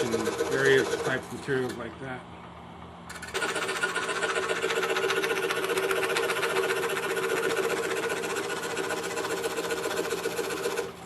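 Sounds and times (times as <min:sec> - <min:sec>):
scroll saw cutting wood: 0:00.0 - 0:01.7, 0:03.1 - 0:11.0.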